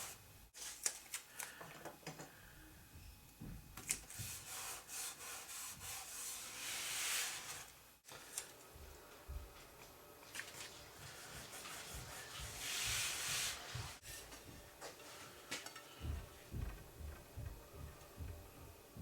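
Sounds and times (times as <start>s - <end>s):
scraping rub: 4.1s - 7.7s, 11.0s - 14.3s
soft low knocks: 16.0s - 19.0s.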